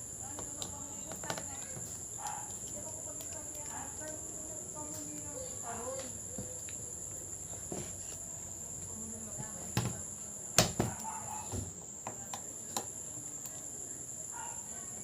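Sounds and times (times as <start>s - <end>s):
crickets chirring: 0.0s - 15.0s
sharp plastic clicks and taps: 0.2s - 4.2s.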